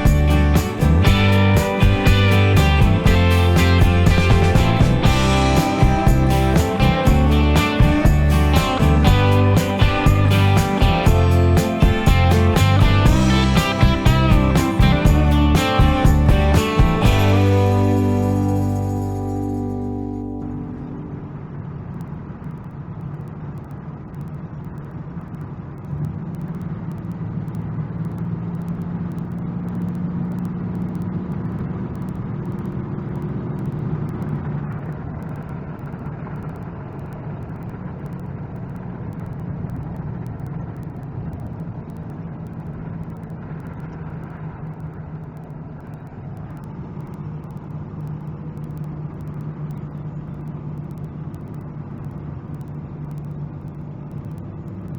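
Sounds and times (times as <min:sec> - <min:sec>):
diesel engine running under load: 0:00.0 - 0:22.8.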